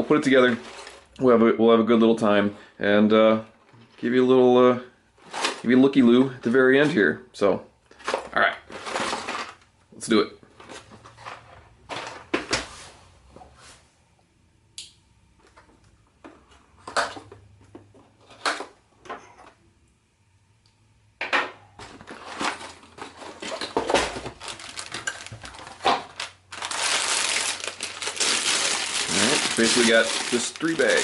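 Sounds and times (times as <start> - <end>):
cardboard and plastic bags crinkling: 0.0 - 1.1, 5.2 - 6.9, 8.0 - 9.7, 21.8 - 31.0.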